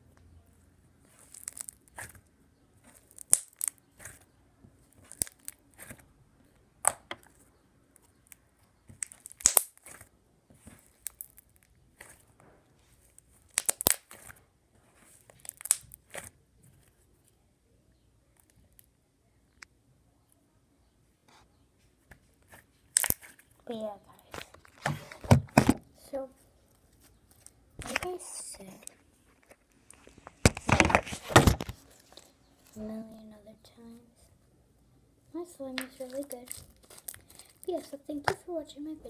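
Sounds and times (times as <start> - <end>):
slime squishing and crackling: 1.0 - 6.1, 6.8 - 17.3, 22.5 - 24.9, 35.7 - 38.4.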